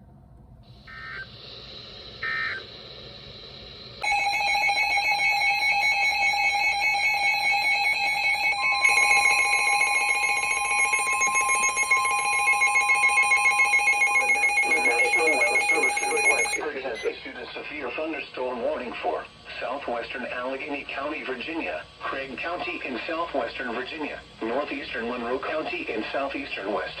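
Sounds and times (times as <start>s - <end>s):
warbling data tones: 0.8s - 19.2s
harsh steady alert tone: 0.9s - 19.1s.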